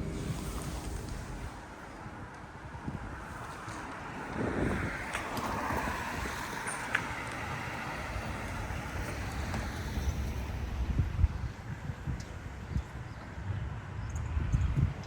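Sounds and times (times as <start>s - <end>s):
low outdoor rumble: 0.0s - 3.4s
wind buffeting microphone: 0.0s - 15.0s.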